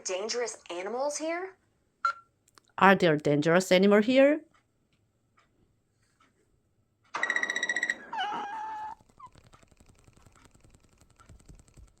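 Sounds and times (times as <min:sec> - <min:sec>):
cat meowing: 0:08.0 - 0:09.0.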